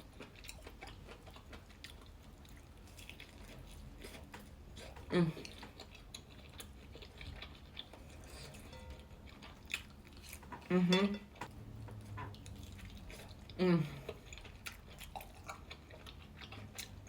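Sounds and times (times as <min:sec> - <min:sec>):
person chewing food: 0:00.0 - 0:17.0
person humming: 0:05.1 - 0:05.4, 0:10.7 - 0:11.3, 0:13.6 - 0:14.1.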